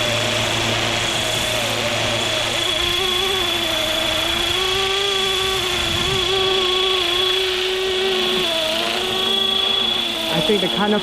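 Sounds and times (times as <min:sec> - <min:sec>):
model helicopter motor whine: 0:00.0 - 0:11.0
rotor tones: 0:00.0 - 0:11.0.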